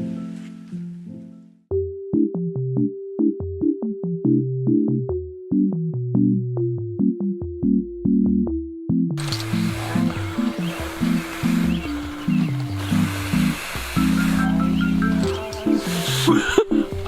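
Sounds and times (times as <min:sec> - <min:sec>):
plucked keyboard notes: 0:00.0 - 0:17.0
bass line: 0:03.6 - 0:17.0
mellow electronic beat: 0:07.0 - 0:17.0
outdoor noise hiss: 0:09.2 - 0:17.0.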